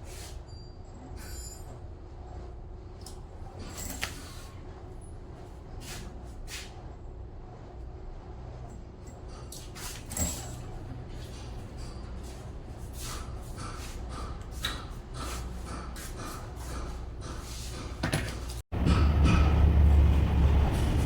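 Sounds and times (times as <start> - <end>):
steady low hum: 10.7 - 21.0.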